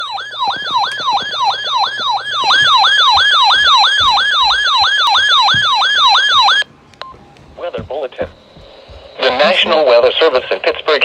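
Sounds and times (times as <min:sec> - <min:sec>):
electronic siren yelp: 0:00.0 - 0:06.7.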